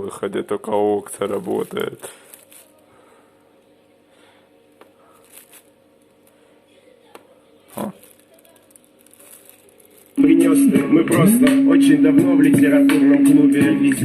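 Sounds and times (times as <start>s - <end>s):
faint electrical hum: 0.0s - 14.0s.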